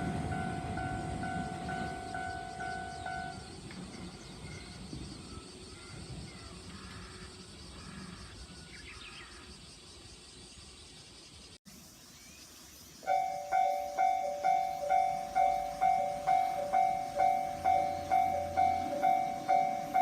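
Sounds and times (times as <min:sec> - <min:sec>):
level crossing warning bell: 0:00.0 - 0:04.6, 0:13.0 - 0:20.0
low rumble of train: 0:00.0 - 0:09.0, 0:13.0 - 0:20.0
faint high chirps: 0:12.1 - 0:20.0.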